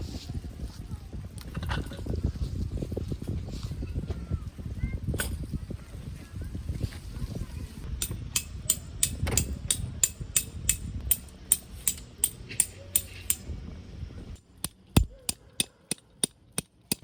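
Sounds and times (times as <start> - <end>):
sharp rhythmic clicks: 8.0 - 13.4, 14.4 - 17.0.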